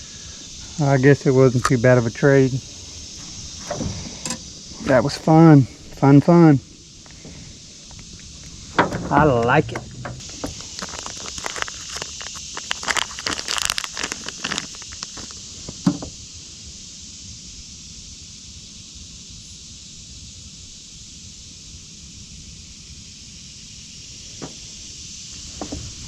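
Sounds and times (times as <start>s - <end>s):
steady high hiss: 0.0s - 26.0s
handling noises rustling and clicking: 8.0s - 16.1s.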